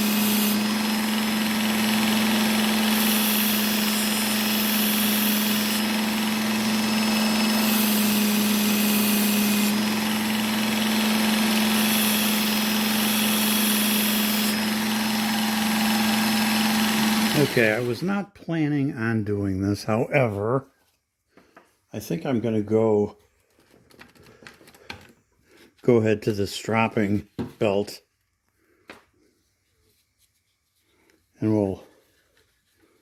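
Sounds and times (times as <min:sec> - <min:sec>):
belt sharpener motor hum: 0:00.0 - 0:18.0.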